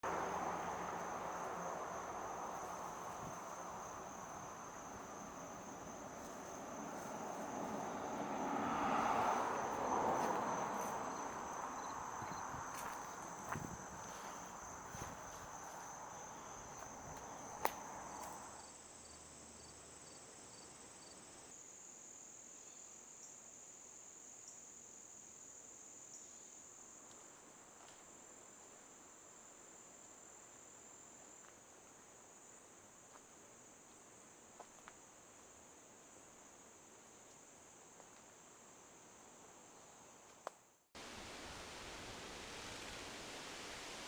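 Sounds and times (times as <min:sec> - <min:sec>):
insects trilling: 0:00.0 - 0:21.2
broad hiss: 0:41.0 - 0:44.0.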